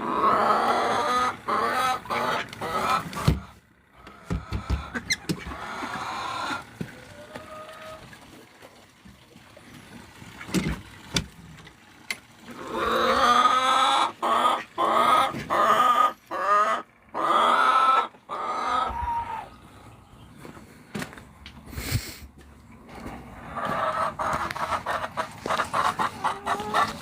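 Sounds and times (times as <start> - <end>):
chicken squawking: 0.0 - 8.1, 12.5 - 19.6, 23.4 - 27.0.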